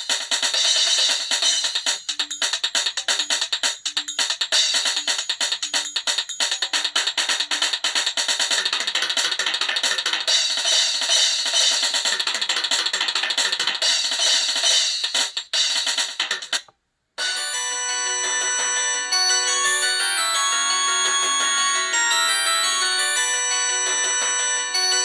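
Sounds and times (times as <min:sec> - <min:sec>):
polyphonic ringtone: 0:00.6 - 0:10.4, 0:17.2 - 0:25.0.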